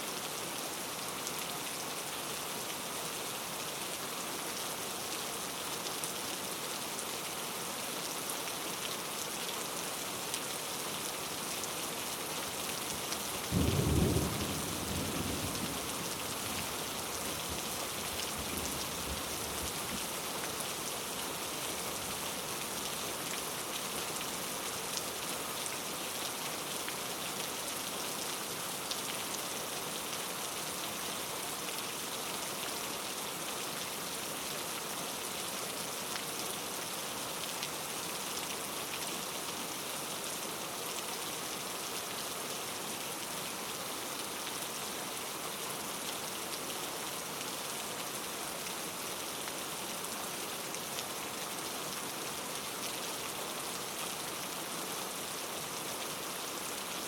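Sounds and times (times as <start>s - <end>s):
rain pattering: 11.4s - 27.6s.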